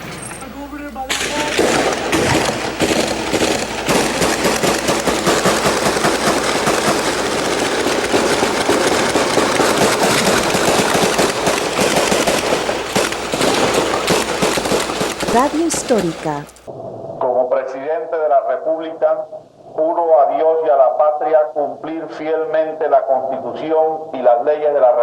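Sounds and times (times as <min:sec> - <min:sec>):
rapid gunfire: 0:01.1 - 0:16.5.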